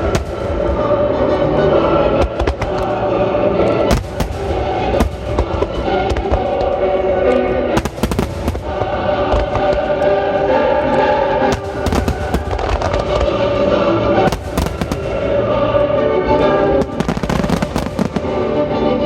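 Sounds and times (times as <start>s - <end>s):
fireworks bursting: 0.0s - 0.8s, 3.8s - 6.6s, 7.7s - 10.0s, 11.4s - 13.6s, 14.2s - 15.5s, 16.8s - 18.6s
loud music: 0.0s - 19.0s.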